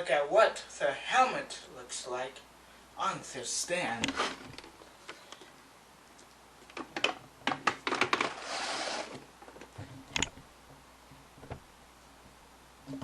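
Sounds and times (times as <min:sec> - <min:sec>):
plastic scrape: 0:07.8 - 0:09.2.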